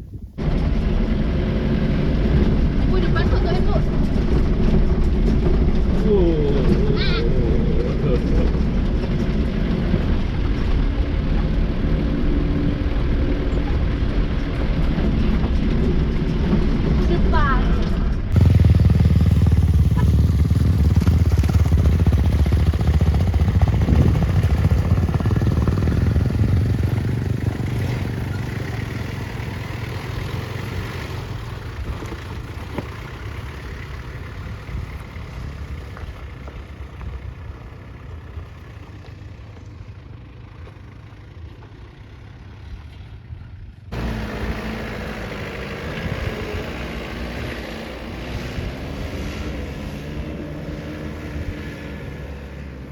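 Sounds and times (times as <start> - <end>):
vehicle engine rumbling: 0.0 - 52.9.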